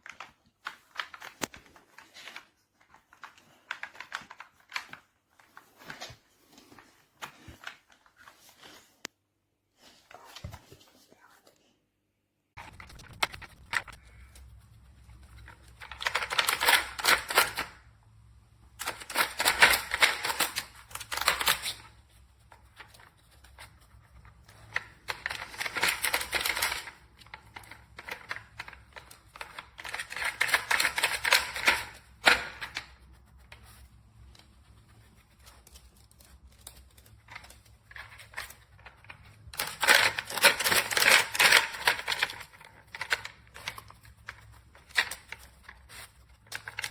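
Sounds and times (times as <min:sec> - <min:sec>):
plastic toy clicking and rattling: 0:15.4 - 0:17.9, 0:18.7 - 0:21.9, 0:24.1 - 0:32.9, 0:36.1 - 0:46.9.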